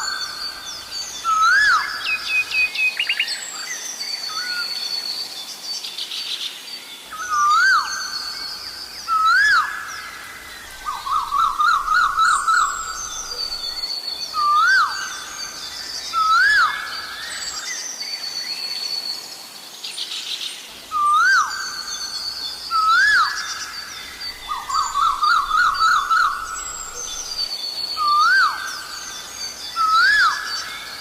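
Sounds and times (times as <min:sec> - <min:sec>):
small birds chirping: 0:05.4 - 0:18.7, 0:19.9 - 0:31.0.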